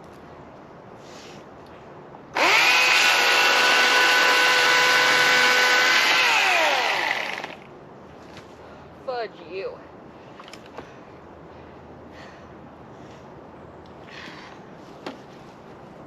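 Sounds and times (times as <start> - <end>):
chainsaw revving: 2.4 - 7.6.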